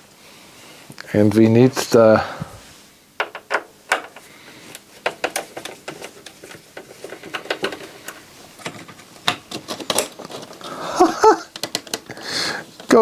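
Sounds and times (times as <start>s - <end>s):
plastic and metal parts clicking: 3.2s - 10.7s, 11.4s - 12.2s.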